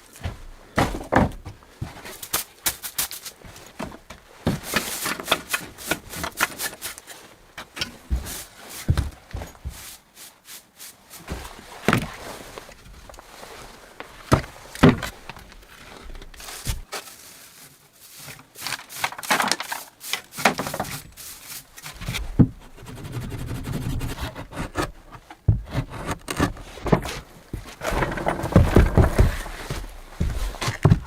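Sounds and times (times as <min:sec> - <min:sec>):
scraping and rustling: 0:01.8 - 0:31.0.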